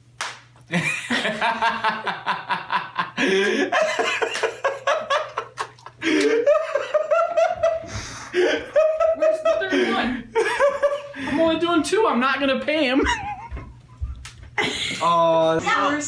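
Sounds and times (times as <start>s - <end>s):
people laughing hard: 0.7s - 11.4s.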